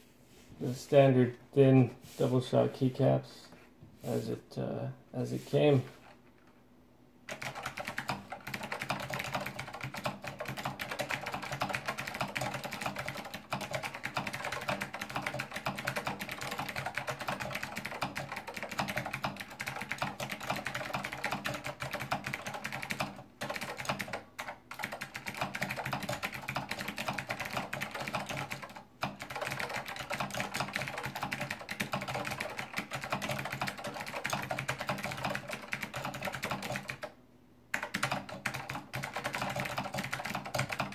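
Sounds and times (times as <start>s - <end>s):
fast clicky keyboard typing: 7.3s - 40.9s.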